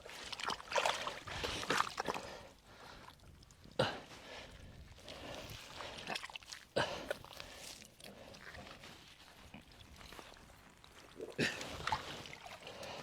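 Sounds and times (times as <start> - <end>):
water sloshing: 0.2 - 2.2.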